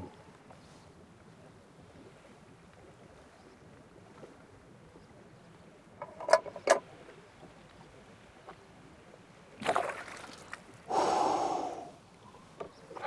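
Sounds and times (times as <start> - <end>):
water splashing: 9.6 - 11.0.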